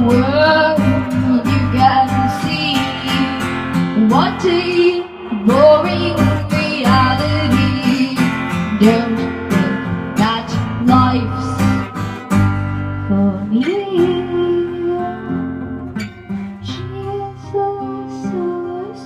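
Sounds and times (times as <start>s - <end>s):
strummed acoustic guitar: 0.0s - 19.0s.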